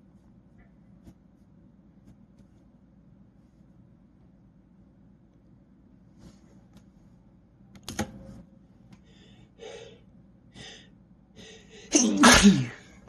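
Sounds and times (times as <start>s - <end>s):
man gasping in-breaths: 9.1s - 12.8s
man sneezing loudly: 11.8s - 12.9s.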